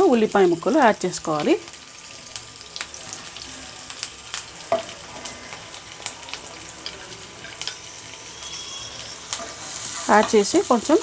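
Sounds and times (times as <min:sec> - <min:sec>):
food sizzling in hot oil: 0:00.0 - 0:11.0
spatula scraping a pan: 0:06.9 - 0:11.0.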